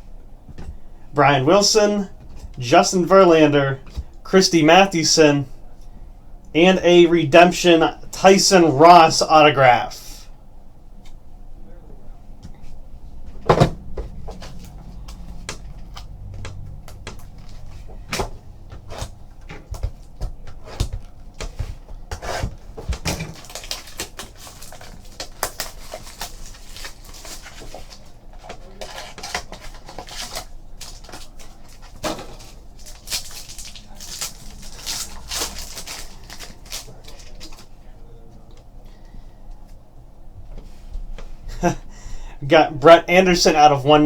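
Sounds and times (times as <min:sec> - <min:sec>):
trading cards clicking and rustling: 0:13.4 - 0:37.8.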